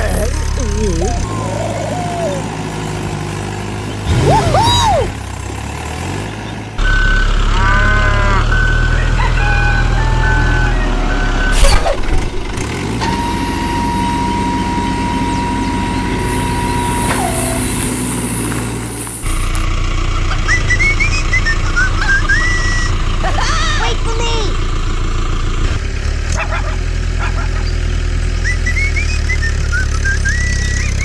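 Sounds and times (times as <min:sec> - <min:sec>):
vehicle engine hum: 0:00.0 - 0:31.0
long steady tone: 0:13.3 - 0:19.7
high beeps: 0:16.2 - 0:19.7.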